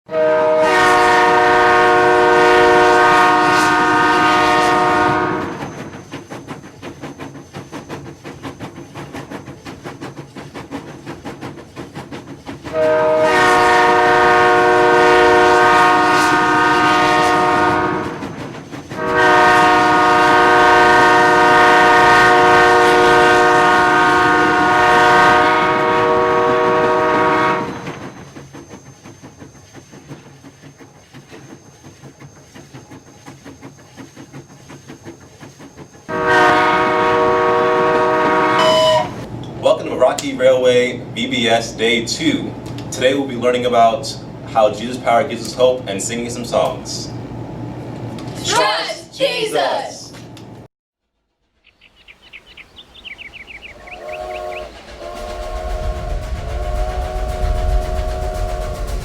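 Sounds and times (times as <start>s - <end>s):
train horn blasts: 0.1s - 5.8s, 12.7s - 28.2s, 36.1s - 39.3s, 53.4s - 59.0s
train wheels clickety-clack: 0.4s - 47.2s, 51.4s - 59.0s.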